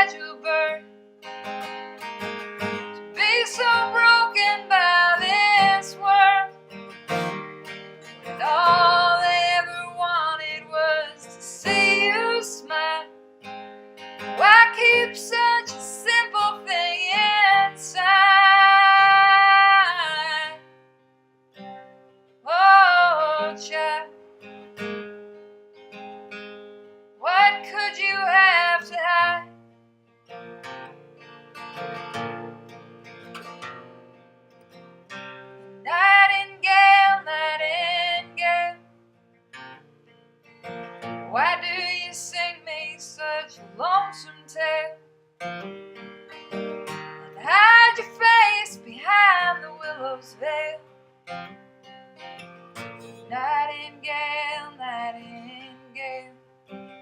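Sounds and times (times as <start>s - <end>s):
woman singing a slow ballad: 0.0s - 0.9s, 3.0s - 6.6s, 8.3s - 13.2s, 14.3s - 20.6s, 22.5s - 24.2s, 27.2s - 29.5s, 35.9s - 38.8s, 41.3s - 45.0s, 47.3s - 50.9s, 53.2s - 56.4s
acoustic guitar: 0.0s - 57.0s.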